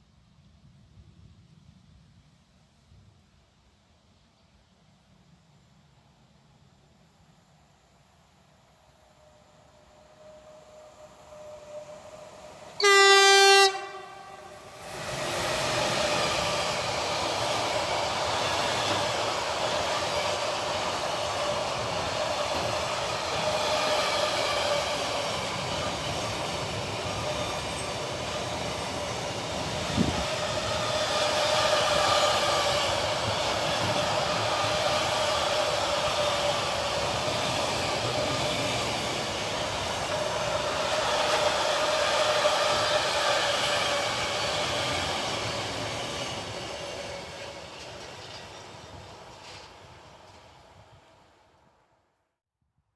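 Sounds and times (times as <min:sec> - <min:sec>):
train wheels and wagons passing: 0:07.0 - 0:52.0
train horn blast: 0:12.8 - 0:14.8.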